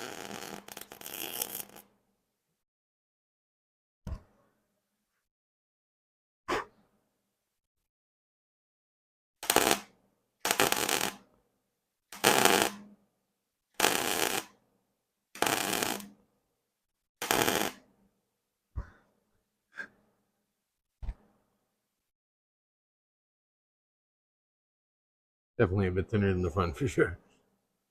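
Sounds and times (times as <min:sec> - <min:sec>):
welder arc crackling: 0:09.4 - 0:11.2, 0:12.2 - 0:12.8, 0:13.8 - 0:14.5, 0:15.4 - 0:16.1, 0:17.2 - 0:17.8.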